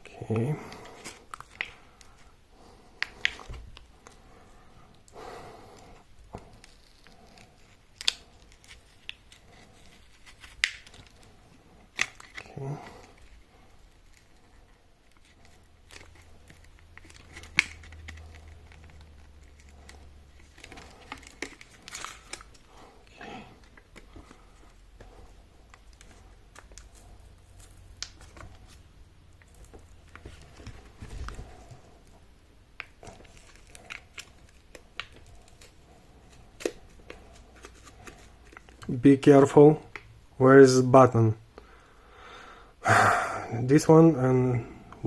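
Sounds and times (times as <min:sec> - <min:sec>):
plastic cover clicking and crinkling: 0:00.8 - 0:02.1, 0:06.3 - 0:11.3, 0:11.9 - 0:13.4, 0:15.1 - 0:22.7, 0:23.6 - 0:31.7, 0:32.8 - 0:39.0.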